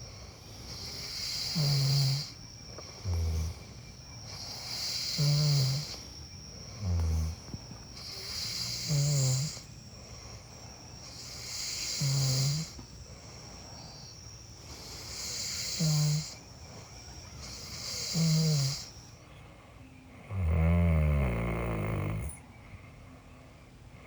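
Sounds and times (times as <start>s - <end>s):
high insect drone: 0.0s - 24.0s
person snoring: 0.7s - 6.1s, 6.7s - 9.7s, 11.1s - 12.8s, 14.8s - 16.4s, 17.4s - 18.9s, 20.2s - 22.4s.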